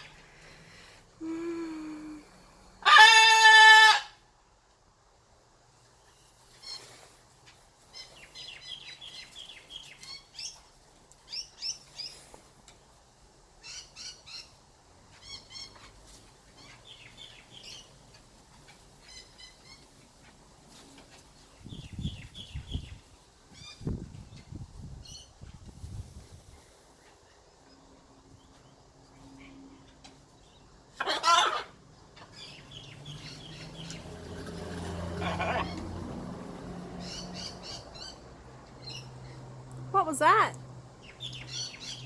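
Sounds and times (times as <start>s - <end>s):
small birds chirping: 5.9s - 13.0s, 13.6s - 30.8s, 31.9s - 35.9s, 37.0s - 39.5s, 40.2s - 42.0s
macaw squawk: 31.0s - 31.8s, 35.2s - 35.8s.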